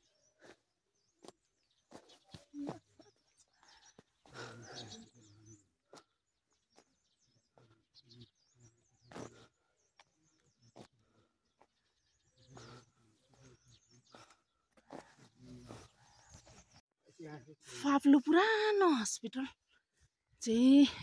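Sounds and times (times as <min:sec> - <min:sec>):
small birds chirping: 0:00.0 - 0:21.0
footsteps walking on a path: 0:00.4 - 0:04.6, 0:08.9 - 0:16.8.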